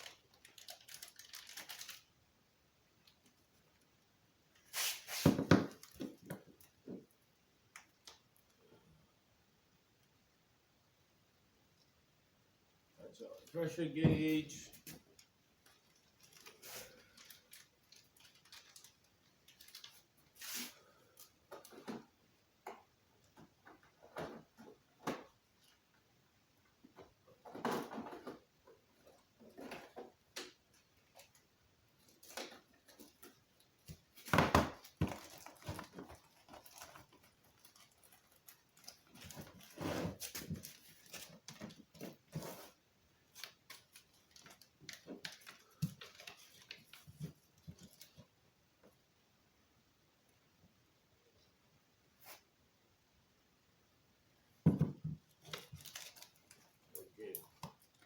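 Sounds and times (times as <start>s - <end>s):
packaging rustling: 0.0s - 2.1s, 15.1s - 21.9s, 32.0s - 48.2s, 55.4s - 58.0s.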